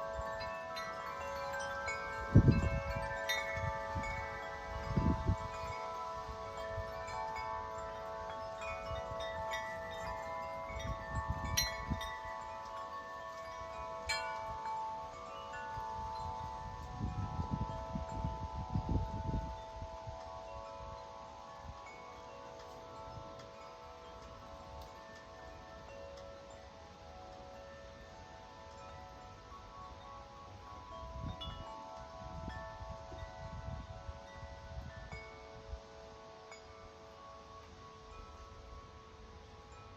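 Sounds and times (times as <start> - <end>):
wind chime ringing: 0.0 - 39.9
wind rumbling on microphone: 0.0 - 39.9.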